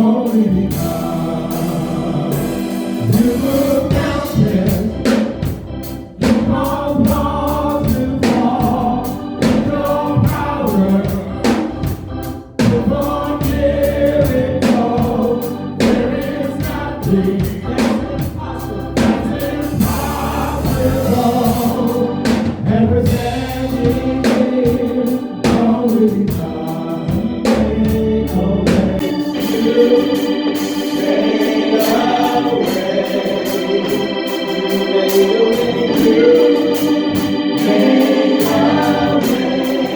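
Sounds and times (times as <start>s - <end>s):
choir singing gospel: 0.0s - 39.9s
organ chords: 0.0s - 39.9s
steady beat and bass: 0.3s - 24.9s.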